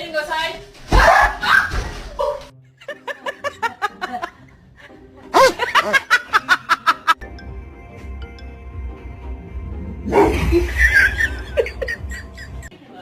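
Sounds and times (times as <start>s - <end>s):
music: 0.9s - 13.0s
snickering laughter: 2.7s - 4.5s, 5.3s - 7.2s, 10.3s - 12.7s.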